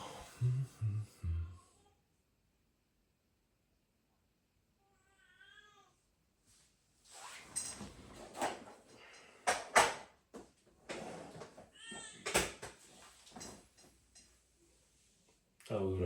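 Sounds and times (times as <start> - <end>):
rustling and clattering: 7.2 - 14.4.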